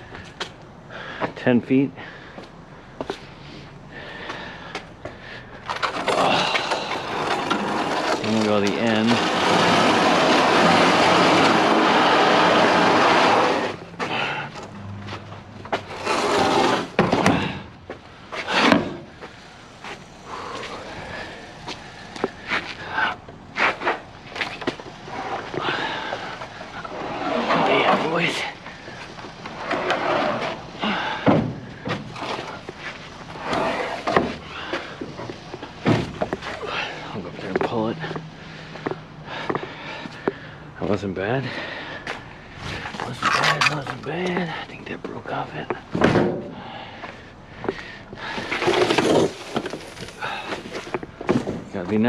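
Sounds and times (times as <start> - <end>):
heavy pallet scraping: 5.7 - 17.7, 18.3 - 38.6, 42.6 - 44.6, 48.2 - 52.0.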